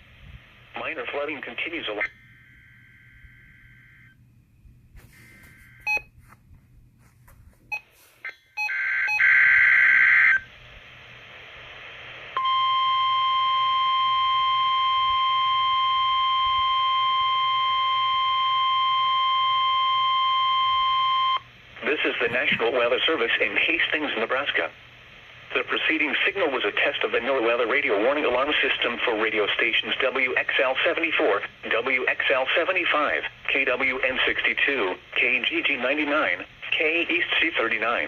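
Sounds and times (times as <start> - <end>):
steady single-pitch alarm tone: 2.1 - 6.2, 7.7 - 10.5, 12.4 - 21.4
short broken beeps: 5.2 - 6.1.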